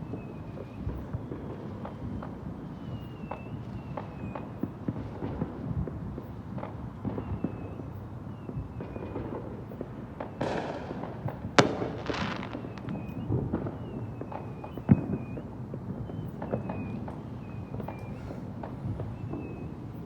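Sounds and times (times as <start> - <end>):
fireworks pops and crackles: 0.0 - 20.0
hissing firework burst: 8.9 - 14.1
sharp firework bang: 10.4 - 13.9.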